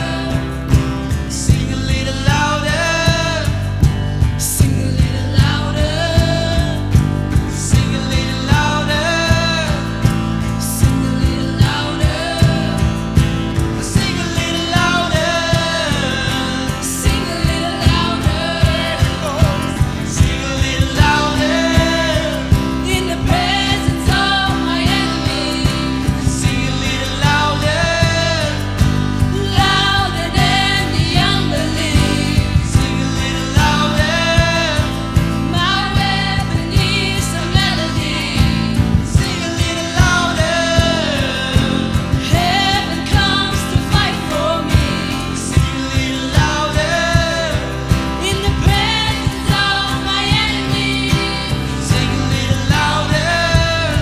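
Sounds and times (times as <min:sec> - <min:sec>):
song with solo singing voice: 0:00.0 - 0:54.0.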